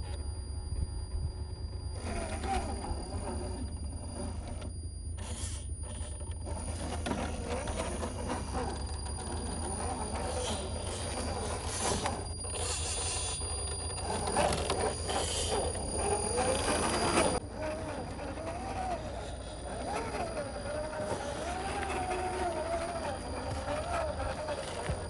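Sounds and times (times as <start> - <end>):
low rumble: 0.0 - 17.4
electric motor and gearbox whirring: 0.0 - 25.0
tyres scrabbling over dirt and rock: 19.6 - 25.0.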